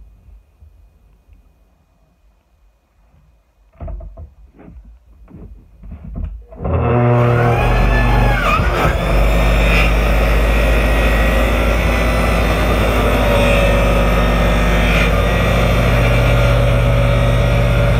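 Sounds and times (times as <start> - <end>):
table saw motor running: 6.5 - 17.9.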